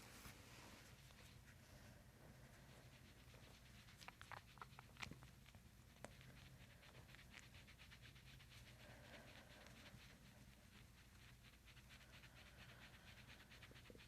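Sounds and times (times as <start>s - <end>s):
faint clicks and rustles: 0.0s - 14.0s
low room hum: 0.0s - 14.0s.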